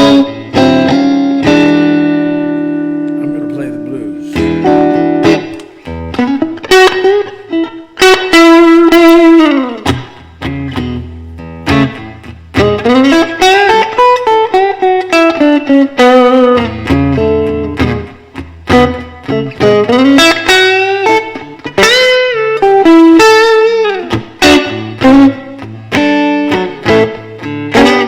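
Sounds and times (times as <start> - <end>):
electric guitar melody with bends: 0.0 - 28.0.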